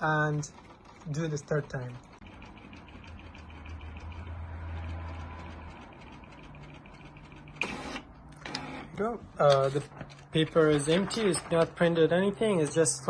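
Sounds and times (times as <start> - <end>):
rapid fine ticking: 0.0 - 7.6
printer motors whirring: 0.0 - 13.0.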